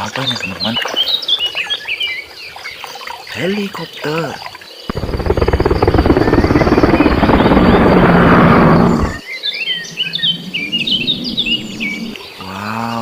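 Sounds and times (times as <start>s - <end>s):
helicopter rotor chopping: 4.9s - 9.2s.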